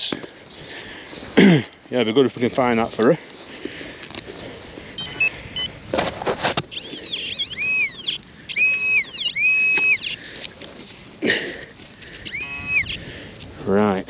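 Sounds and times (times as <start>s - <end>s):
metal detector tones: 5.0s - 5.8s, 6.5s - 10.6s, 12.1s - 13.0s
short stepped beeps: 5.0s - 5.8s, 6.7s - 10.2s, 12.2s - 13.0s.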